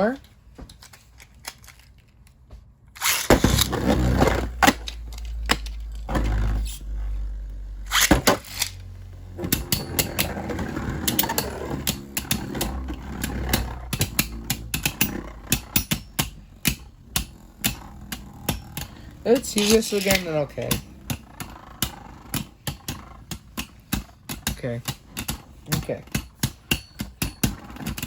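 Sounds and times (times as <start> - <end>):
spinning tops humming: 3.0 - 24.3
spinning tops clacking together: 11.0 - 21.1.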